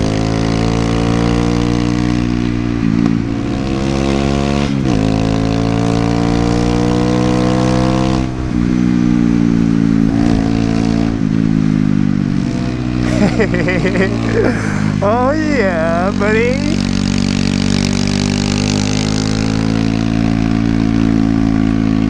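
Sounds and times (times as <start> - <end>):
wind rush: 7.8 - 12.6.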